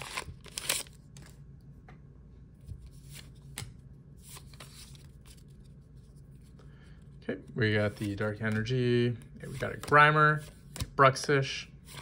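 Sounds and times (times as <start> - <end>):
trading cards sliding and flipping: 2.6 - 12.0.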